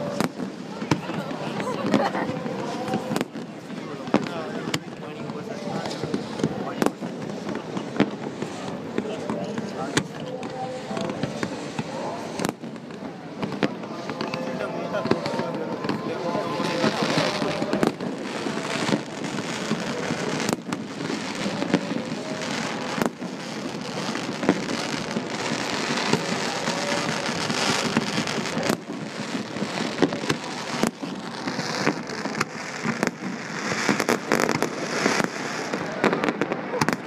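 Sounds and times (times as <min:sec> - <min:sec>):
fireworks bangs: 0:00.0 - 0:37.0
fireworks crackling: 0:00.0 - 0:37.0.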